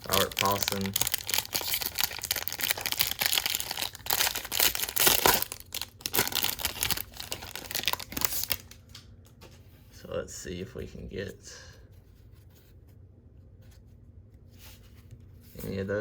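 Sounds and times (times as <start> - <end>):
foil wrapper crinkling and tearing: 0.0 - 8.8.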